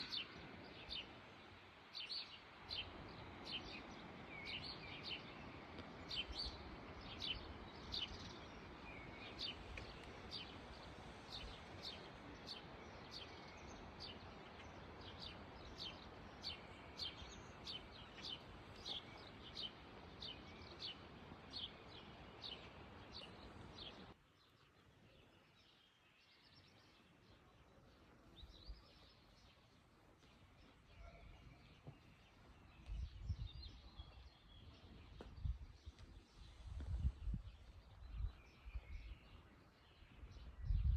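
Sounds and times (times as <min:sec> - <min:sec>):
songbird chirping: 0:00.0 - 0:40.9.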